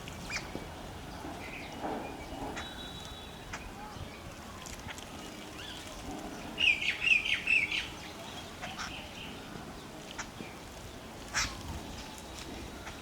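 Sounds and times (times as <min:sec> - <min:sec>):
sparrows chirping: 0:00.0 - 0:13.0.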